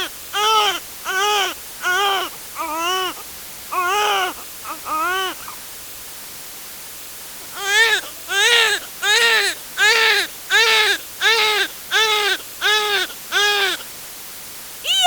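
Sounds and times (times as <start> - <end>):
baby crying: 0.0 - 5.6, 7.6 - 13.8.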